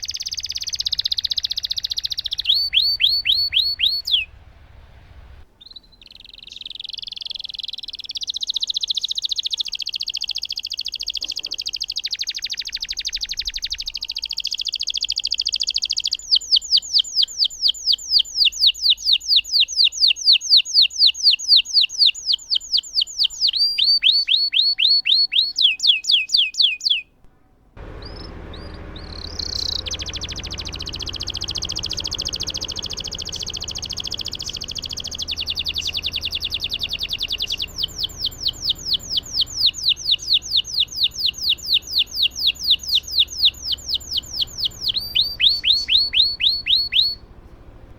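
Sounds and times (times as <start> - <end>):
canary singing trills: 0.0 - 27.2, 27.8 - 47.9
low hiss: 3.5 - 5.9, 27.2 - 44.9.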